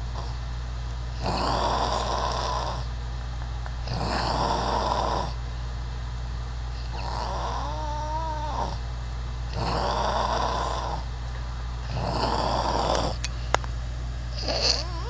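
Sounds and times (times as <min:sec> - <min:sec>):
steady low hum: 0:00.0 - 0:15.0
person snoring loudly: 0:01.2 - 0:02.9, 0:03.9 - 0:05.4, 0:06.8 - 0:08.8, 0:09.5 - 0:11.1, 0:11.9 - 0:13.2, 0:14.4 - 0:15.0.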